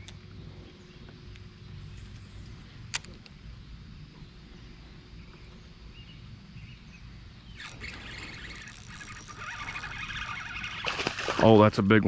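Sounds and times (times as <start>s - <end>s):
low steady hum: 0.0s - 12.0s
faint bird chirps: 3.5s - 11.2s.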